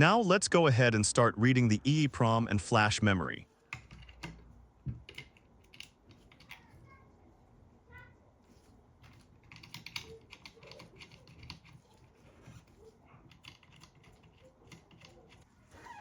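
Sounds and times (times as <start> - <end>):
computer keyboard typing: 5.0 - 6.6, 9.0 - 12.2, 13.3 - 15.5.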